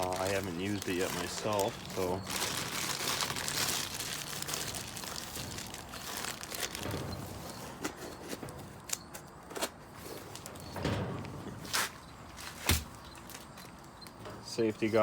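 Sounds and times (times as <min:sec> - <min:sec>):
rustling: 0:00.0 - 0:08.6.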